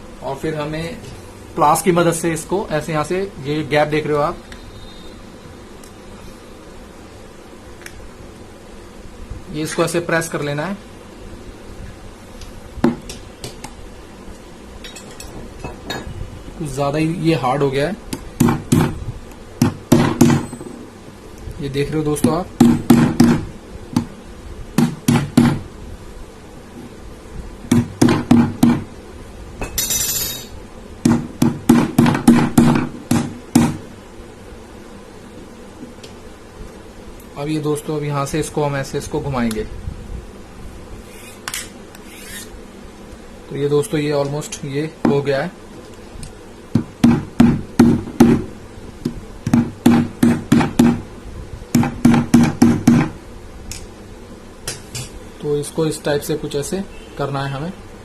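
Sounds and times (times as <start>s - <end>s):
brief scrape: 41.1s - 42.5s.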